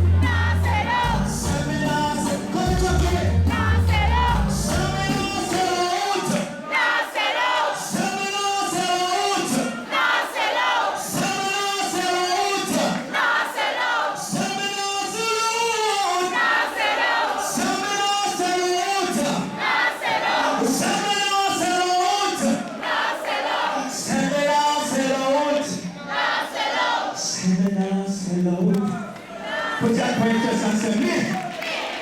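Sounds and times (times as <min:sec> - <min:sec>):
deep bass of backing band: 0:00.0 - 0:05.9
choir singing: 0:00.0 - 0:08.8, 0:09.4 - 0:14.5, 0:16.2 - 0:18.0, 0:19.2 - 0:21.6, 0:22.3 - 0:27.2, 0:29.2 - 0:30.0.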